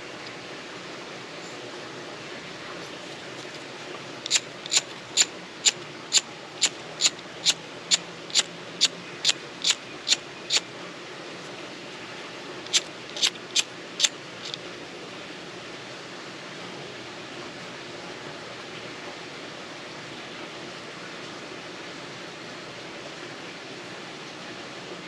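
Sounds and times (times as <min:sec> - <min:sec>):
lighter striker wheel clicks: 0:04.3 - 0:04.8.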